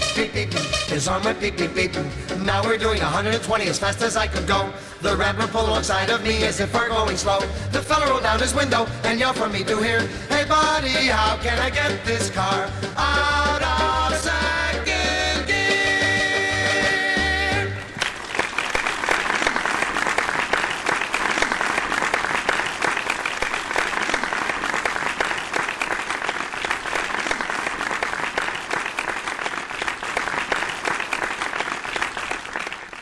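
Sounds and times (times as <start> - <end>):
audience applauding: 17.6 - 33.0.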